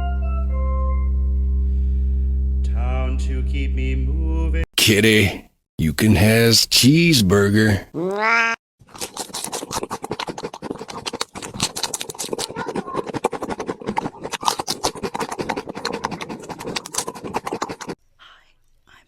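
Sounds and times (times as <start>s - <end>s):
rapid scratching and clicking: 9.0s - 18.0s.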